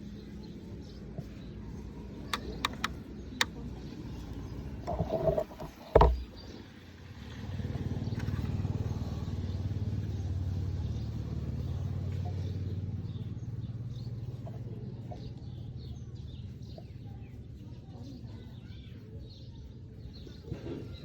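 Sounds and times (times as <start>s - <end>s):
motor rumbling: 1.7s - 16.7s.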